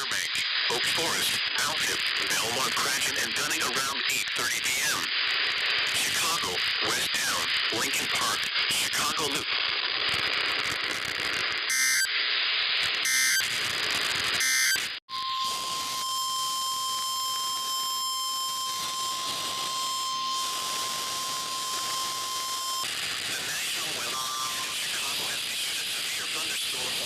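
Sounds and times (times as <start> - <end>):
radio hiss: 0.0 - 12.1, 12.7 - 27.0
digital data bursts: 0.0 - 12.2, 12.8 - 27.0
warning alarm tone: 11.7 - 12.1, 13.0 - 13.4, 14.4 - 22.9.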